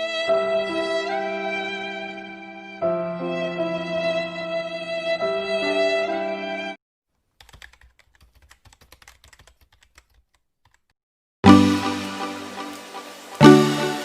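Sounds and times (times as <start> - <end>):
keyboard key clicks: 7.4 - 10.9
music with loud chord: 11.4 - 14.0.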